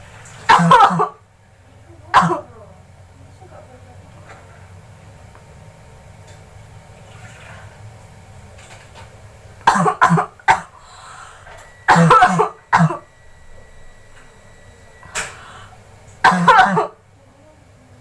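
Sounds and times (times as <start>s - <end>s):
person coughing: 0.5s - 1.2s, 2.2s - 2.5s, 9.7s - 13.1s, 15.2s - 17.0s.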